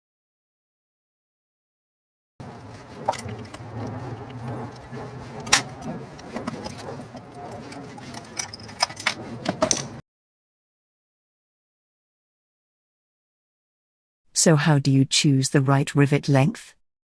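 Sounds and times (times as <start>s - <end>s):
handling noise: 2.4s - 10.0s.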